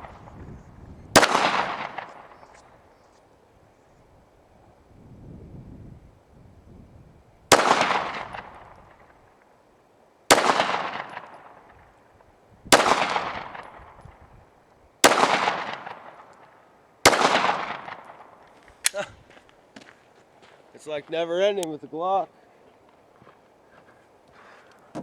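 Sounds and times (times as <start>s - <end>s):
pistol shots: 1.1s - 2.8s, 7.5s - 9.2s, 10.3s - 11.8s, 12.7s - 14.0s, 15.0s - 19.0s.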